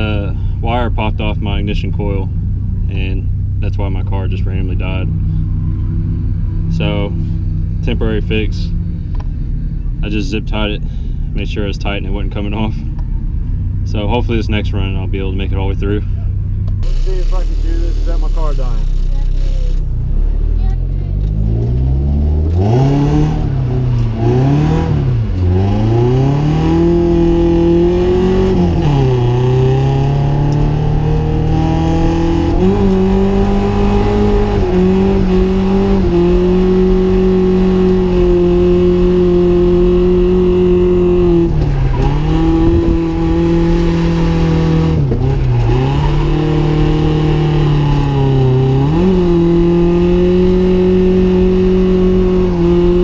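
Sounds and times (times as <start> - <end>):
car engine revving hard: 21.4 - 53.0.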